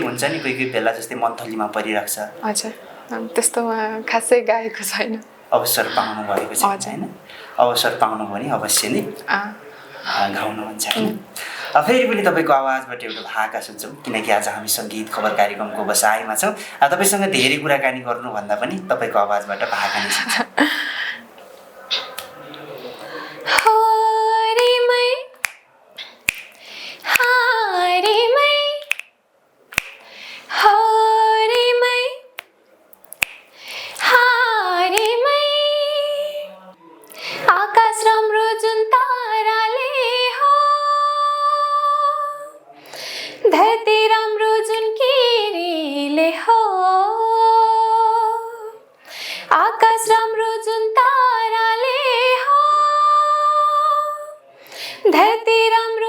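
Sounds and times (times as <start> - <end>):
woman breathing: 5.8 - 6.3, 11.4 - 11.8, 19.6 - 22.1, 22.8 - 23.6, 26.0 - 27.2, 30.0 - 30.7, 33.5 - 34.1, 42.8 - 43.4, 49.0 - 49.5, 54.6 - 55.1
woman singing unaccompanied: 23.4 - 26.1, 27.0 - 29.0, 30.5 - 32.4, 34.0 - 36.7, 37.3 - 42.6, 43.5 - 48.9, 49.5 - 54.4, 55.1 - 56.0.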